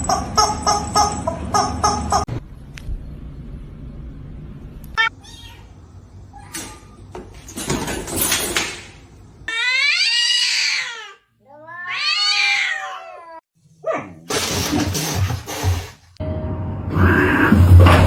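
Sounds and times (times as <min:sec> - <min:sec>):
cat yowling: 0:09.5 - 0:13.4.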